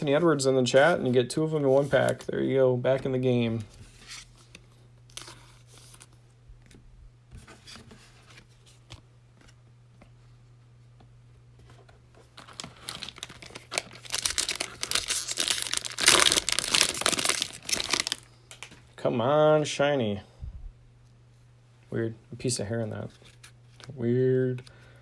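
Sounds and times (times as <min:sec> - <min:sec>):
cellophane wrapper crinkling and tearing: 0:12.3 - 0:18.8.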